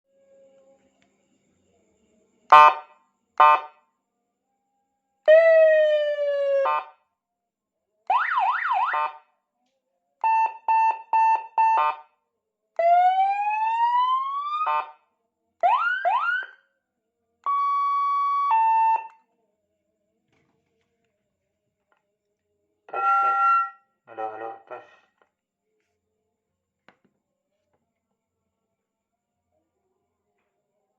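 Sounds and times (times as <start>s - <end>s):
electronic police siren: 2.5s - 3.8s, 5.2s - 7.0s, 8.1s - 9.2s, 10.2s - 12.1s, 12.8s - 15.0s, 15.6s - 16.6s, 17.4s - 19.2s, 22.9s - 25.0s.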